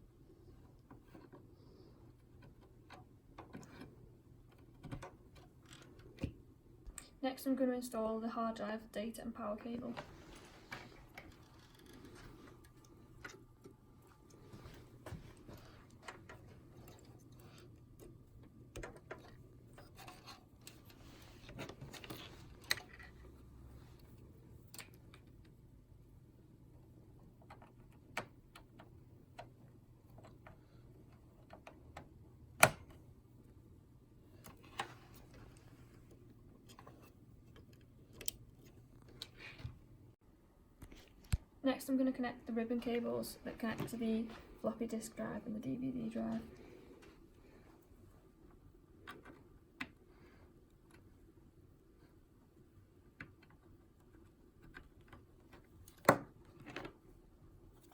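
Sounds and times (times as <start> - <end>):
faint low hum: 0.0 - 57.9
cables clicking into connectors: 24.0 - 25.6, 36.6 - 39.8.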